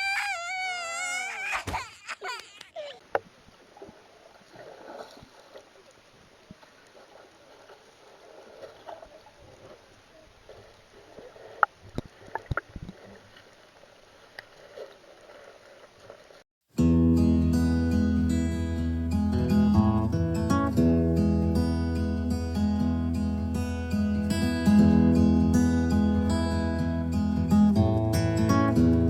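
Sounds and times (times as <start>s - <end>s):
sea water lapping: 0.0s - 16.4s.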